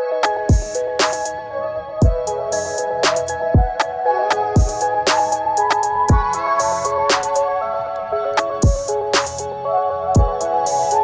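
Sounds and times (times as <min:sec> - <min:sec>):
hi-hat ticks: 0:00.2 - 0:01.4, 0:02.0 - 0:07.4, 0:08.4 - 0:09.5, 0:10.2 - 0:11.0
deep kick drum: 0:00.5 - 0:00.8, 0:02.0 - 0:02.3, 0:03.6 - 0:03.8, 0:04.6 - 0:04.8, 0:06.1 - 0:06.3, 0:08.6 - 0:08.9, 0:10.2 - 0:10.4.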